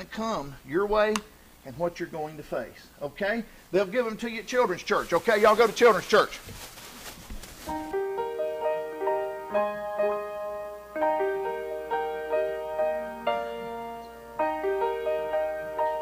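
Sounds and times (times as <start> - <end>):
piano arpeggiated chords: 7.9 - 16.0.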